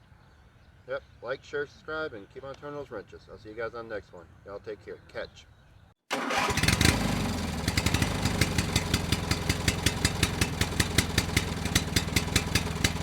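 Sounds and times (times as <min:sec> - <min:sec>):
pickup truck engine idling: 0:07.4 - 0:13.0.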